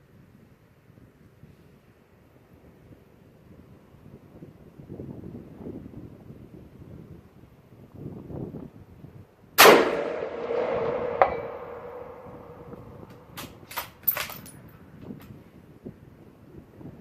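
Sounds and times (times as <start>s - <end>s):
rifle shot with echo: 9.6s - 13.6s
bullet pinging on steel target: 10.0s - 14.5s
rifle bolt clicks: 13.1s - 14.6s.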